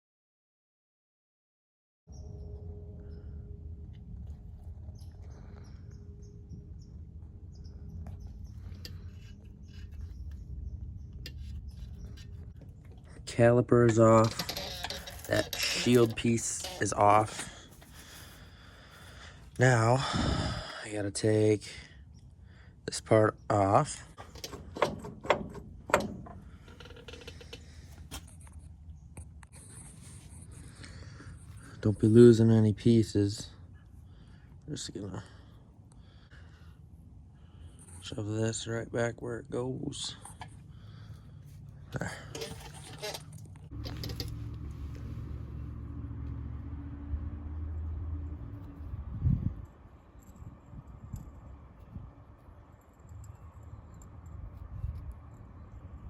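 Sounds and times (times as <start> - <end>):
quiet scraping: 8.0 - 19.8, 24.1 - 32.6, 41.5 - 45.8.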